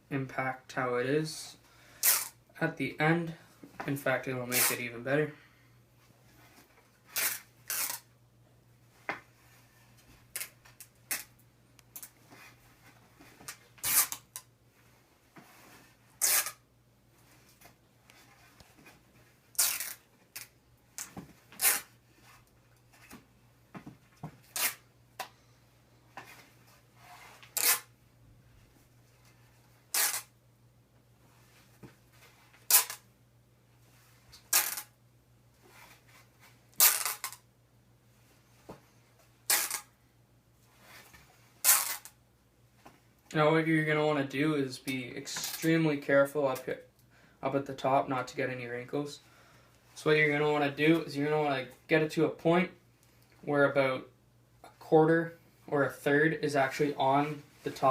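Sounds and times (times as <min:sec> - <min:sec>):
tape peeling off roll: 0:07.1 - 0:08.1, 0:13.4 - 0:14.5, 0:16.2 - 0:16.6, 0:19.5 - 0:21.9, 0:27.1 - 0:27.9, 0:29.9 - 0:30.3, 0:39.5 - 0:39.9.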